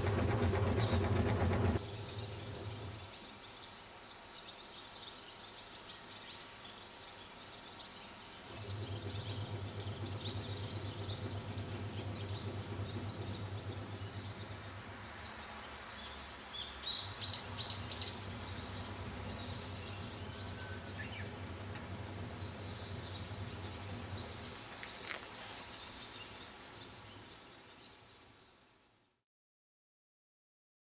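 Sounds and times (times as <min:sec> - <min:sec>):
low machine hum: 0:00.0 - 0:03.4, 0:08.5 - 0:27.3
small birds chirping: 0:08.0 - 0:27.8.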